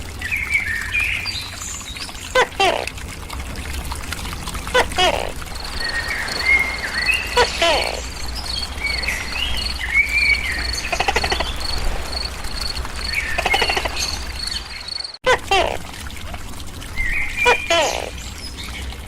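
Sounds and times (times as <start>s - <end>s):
rasping calls: 4.7s - 14.7s, 17.4s - 18.2s
whistled calls: 4.8s - 15.2s
cricket chirping: 5.6s - 15.2s.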